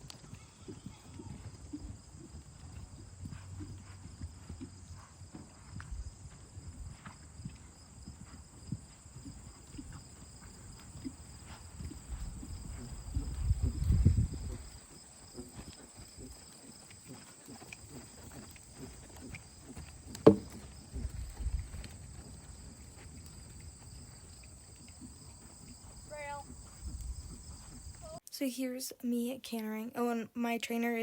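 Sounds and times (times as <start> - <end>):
insects chirring: 0.1 - 28.2
sharp knock: 20.3 - 20.6.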